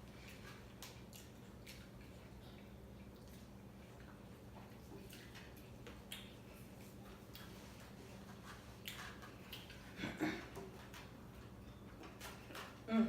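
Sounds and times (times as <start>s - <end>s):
faint steady hum: 0.0s - 13.0s
chewing food clicks and smacks: 0.1s - 7.9s, 8.8s - 10.0s.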